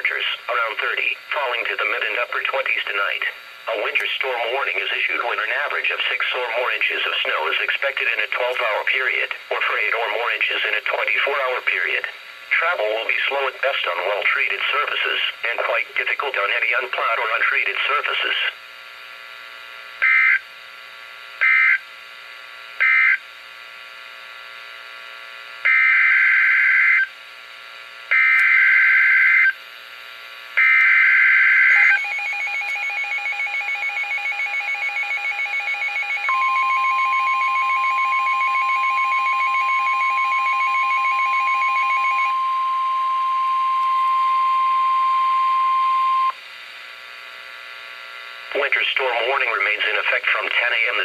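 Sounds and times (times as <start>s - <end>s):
steady single-pitch warning tone: 25.6s - 27.3s, 28.1s - 29.7s, 30.6s - 48.5s.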